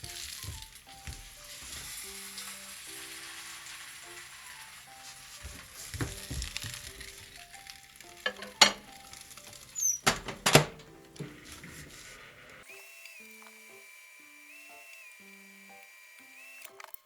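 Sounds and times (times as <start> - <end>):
fish sizzling on a hot plate: 0.0 - 10.1, 10.7 - 17.0
sharp knocks and clicks: 8.3 - 9.0, 10.0 - 11.4.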